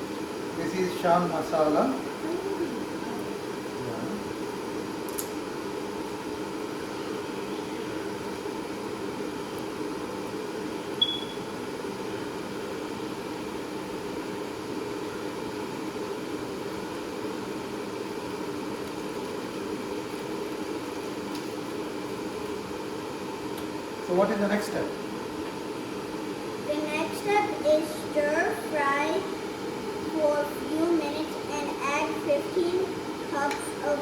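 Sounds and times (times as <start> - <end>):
fan-like hum: 0.0 - 34.0.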